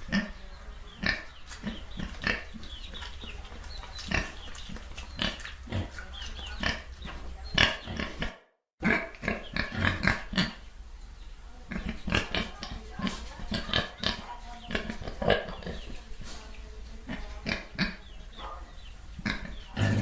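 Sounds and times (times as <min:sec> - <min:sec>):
pigs grunting: 0:00.0 - 0:10.6, 0:11.7 - 0:15.9, 0:19.2 - 0:20.0.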